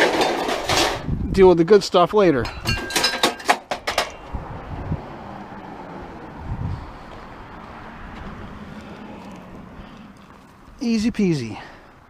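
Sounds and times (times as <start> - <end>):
metal parts clinking: 2.4 - 4.2.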